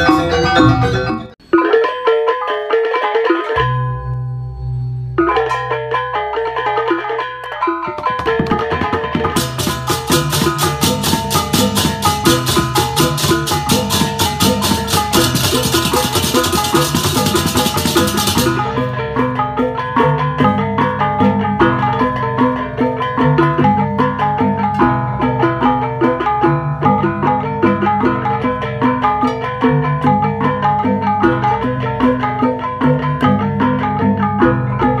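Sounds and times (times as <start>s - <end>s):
metal mallet percussion and drums: 0.0s - 2.4s, 3.4s - 35.0s
fast cymbal strokes: 9.4s - 18.8s.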